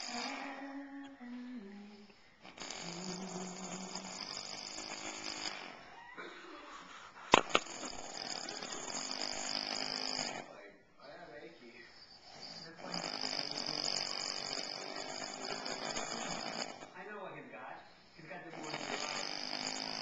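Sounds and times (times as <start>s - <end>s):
man snoring raspily: 0.0s - 0.8s, 2.4s - 5.8s, 7.4s - 10.5s, 12.2s - 17.0s, 18.4s - 20.0s.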